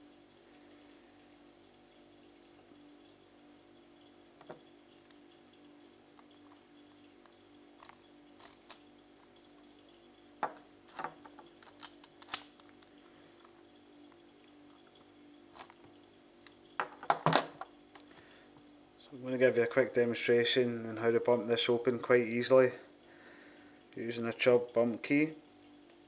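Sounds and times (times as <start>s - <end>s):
steady low hum: 0.0s - 26.0s
objects clicking and knocking: 7.8s - 8.8s, 10.4s - 13.6s, 16.8s - 18.1s.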